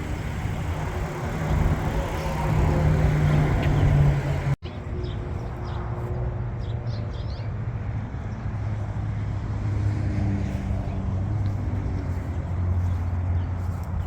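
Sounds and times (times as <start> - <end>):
car rumbling on road: 0.0 - 4.6.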